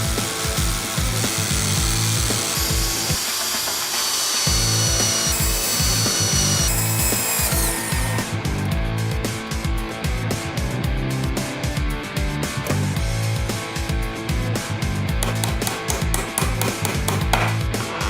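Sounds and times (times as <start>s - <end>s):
electric impact drill running: 0.0s - 8.4s
background music with beat: 4.6s - 18.0s.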